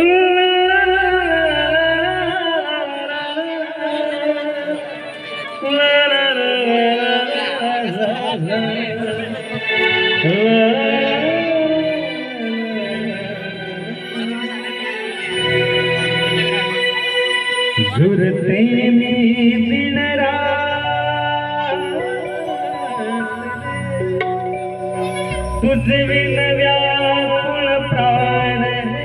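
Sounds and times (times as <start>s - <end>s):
man singing long notes: 0.0s - 29.0s
musical accompaniment: 0.0s - 29.0s.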